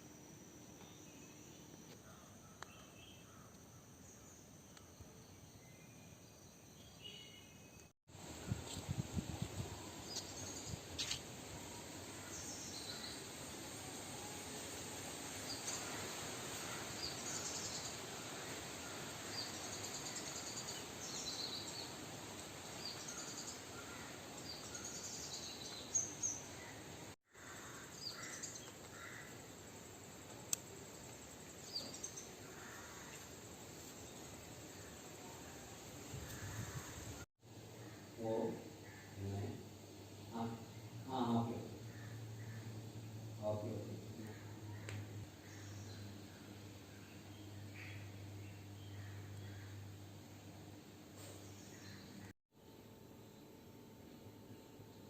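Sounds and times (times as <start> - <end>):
steady background hiss: 0.0 - 55.0
bird chirps: 4.2 - 7.9.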